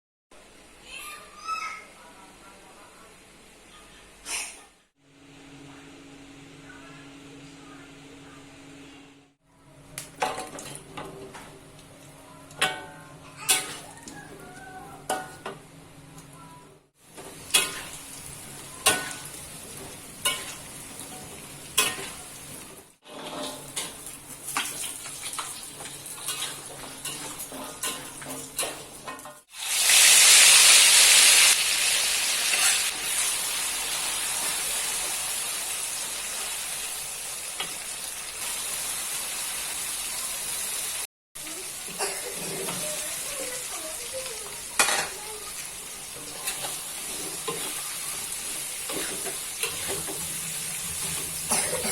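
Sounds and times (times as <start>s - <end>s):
food sizzling in hot oil: 17.0s - 51.8s.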